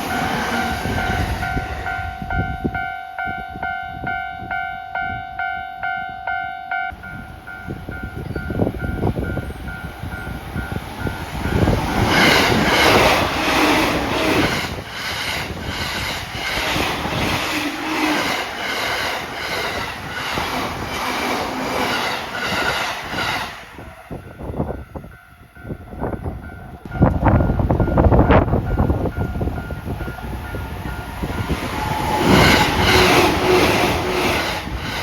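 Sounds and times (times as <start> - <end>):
electric train wheels clattering: 0.0 - 3.0, 6.9 - 24.7, 26.6 - 35.0
level crossing bell ringing: 0.1 - 10.7.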